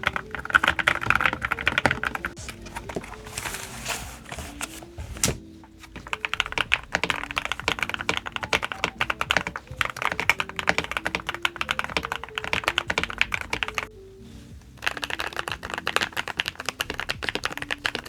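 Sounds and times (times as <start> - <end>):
typing on computer keyboard: 0.0 - 2.4, 5.8 - 13.9, 14.8 - 18.0
faint melody: 0.0 - 18.0.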